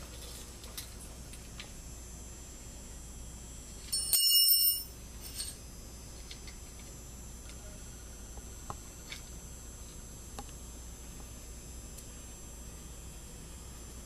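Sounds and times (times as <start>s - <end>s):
sharp metallic clink: 3.9s - 5.6s.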